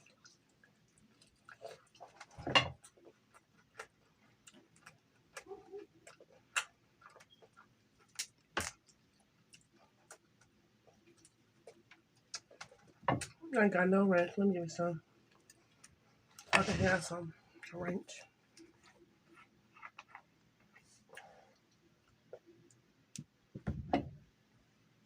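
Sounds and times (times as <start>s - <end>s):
chewing and lip smacks: 0.0s - 13.0s.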